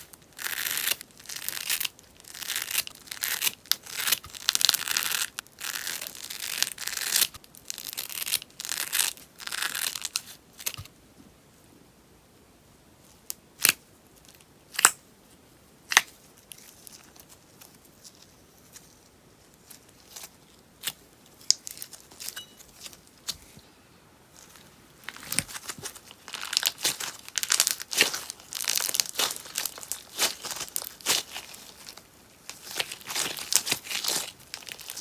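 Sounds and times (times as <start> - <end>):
slime crackling and popping: 25.0 - 35.0.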